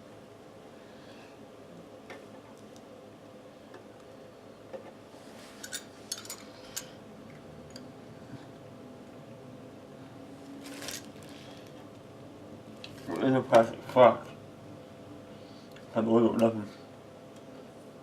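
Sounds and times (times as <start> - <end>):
faint steady hum: 0.0 - 18.0.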